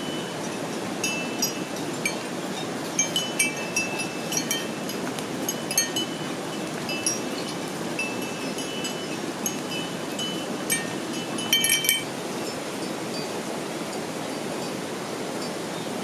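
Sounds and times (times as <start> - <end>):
small bells clinking: 0.0 - 13.0.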